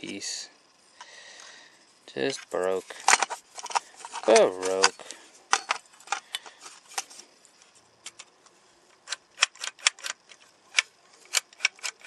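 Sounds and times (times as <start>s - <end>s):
small plastic and metal parts clicking: 2.2s - 7.1s, 8.0s - 8.3s, 8.9s - 12.0s.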